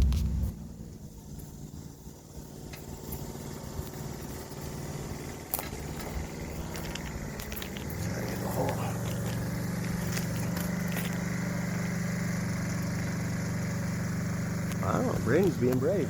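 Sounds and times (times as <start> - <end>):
lift engine running: 0.0 - 16.0.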